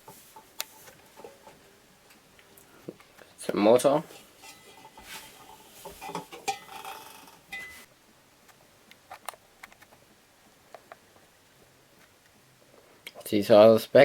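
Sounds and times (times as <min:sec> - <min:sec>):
clattering and clinking: 0:04.1 - 0:07.9.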